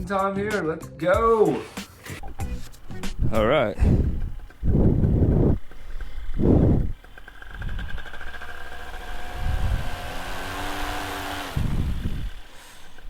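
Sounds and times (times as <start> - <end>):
paramotor engine and propeller: 2.2 - 13.0
wind rumbling on microphone: 2.5 - 12.5.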